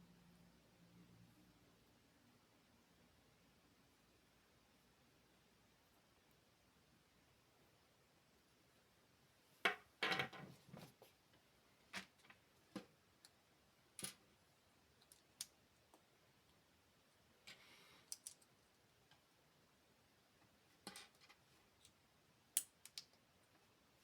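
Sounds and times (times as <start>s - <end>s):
plastic bricks clicking: 18.1s - 18.5s.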